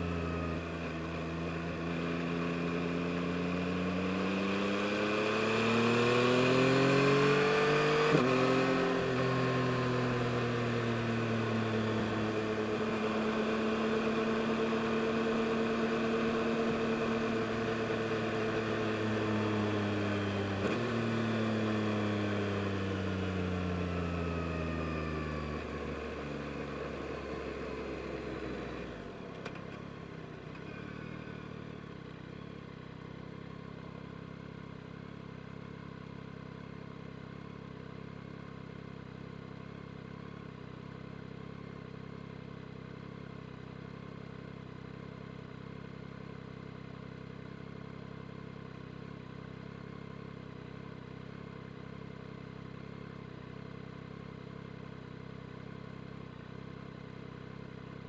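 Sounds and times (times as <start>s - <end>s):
motorcycle engine revving: 1.8s - 23.7s.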